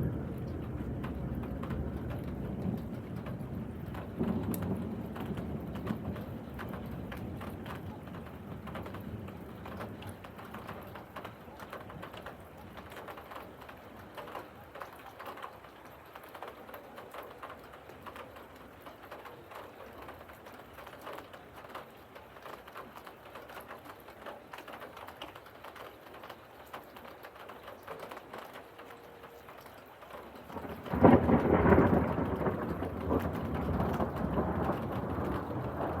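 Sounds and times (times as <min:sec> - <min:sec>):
raindrops dripping on hard surface: 0:00.0 - 0:36.0.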